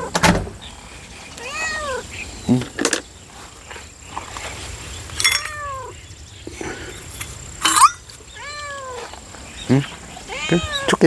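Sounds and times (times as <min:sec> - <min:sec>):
cat meowing: 0:01.4 - 0:02.1, 0:05.4 - 0:06.0, 0:08.3 - 0:09.1, 0:10.2 - 0:11.0.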